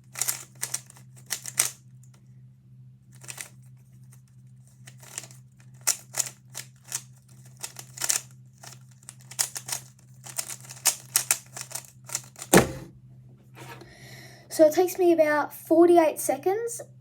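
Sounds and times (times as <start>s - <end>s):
puzzle cube clicking and rattling: 0.1s - 1.8s, 3.2s - 3.6s, 4.8s - 12.8s.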